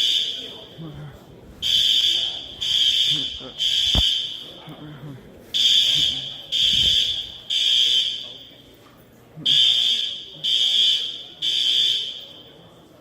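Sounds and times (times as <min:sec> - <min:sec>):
fire alarm beeping: 0:00.0 - 0:00.8, 0:01.6 - 0:04.7, 0:05.6 - 0:08.7, 0:09.4 - 0:12.8.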